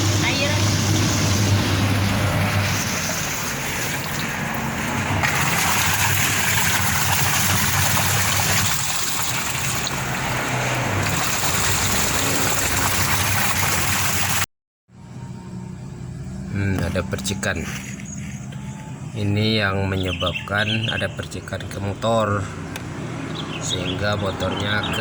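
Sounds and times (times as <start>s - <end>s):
low motor hum: 0.0s - 13.4s
water splashing and trickling: 0.0s - 14.5s.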